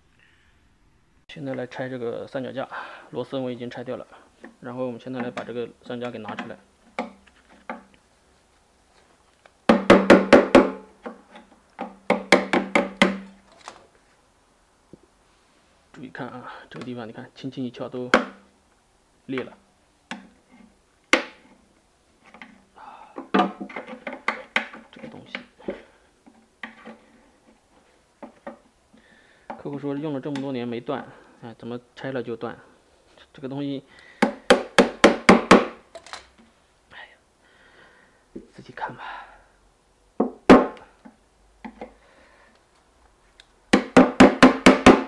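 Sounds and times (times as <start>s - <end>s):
knocks on washing machine drum: 9.7s - 10.8s.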